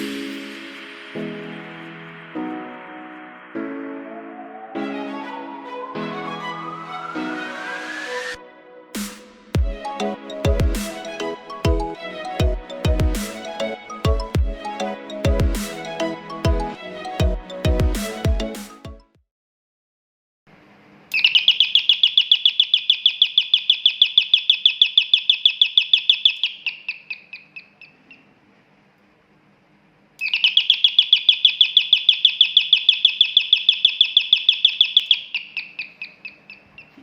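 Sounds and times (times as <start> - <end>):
electronic alarm siren chirps: 3.7 - 8.4, 21.2 - 28.0, 30.2 - 36.9.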